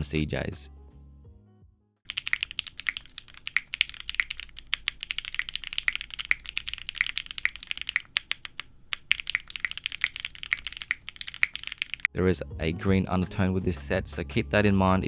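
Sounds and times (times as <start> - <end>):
mechanical keyboard typing: 2.1 - 12.1.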